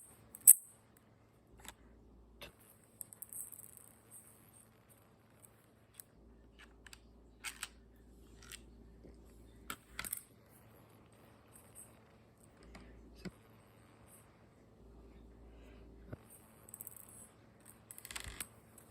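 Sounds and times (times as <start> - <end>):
faint low hum: 0.0 - 18.9
plastic parts clicking: 5.9 - 7.8.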